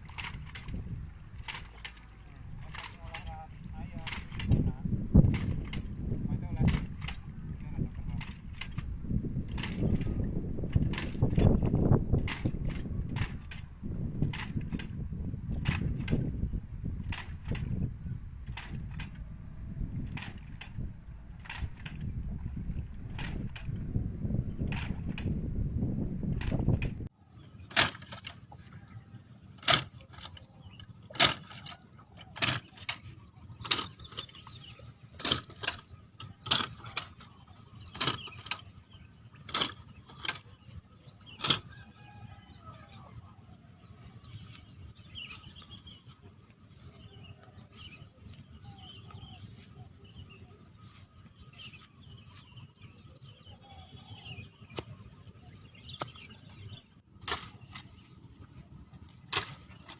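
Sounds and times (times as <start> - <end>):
rice transplanter clicking: 0.0 - 27.1, 27.7 - 28.7, 29.5 - 41.8, 57.2 - 59.9
low rumbling noise: 0.0 - 27.6.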